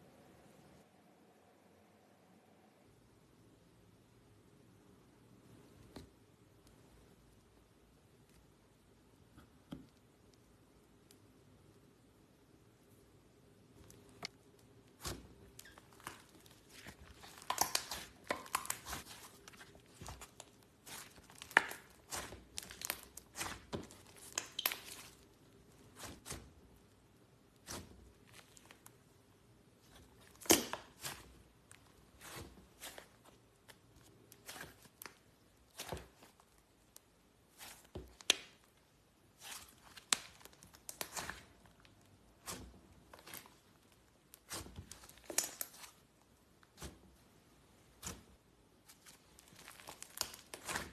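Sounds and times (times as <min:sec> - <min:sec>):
slime squeezed with sticky pops: 0:14.9 - 0:25.2, 0:30.2 - 0:31.4.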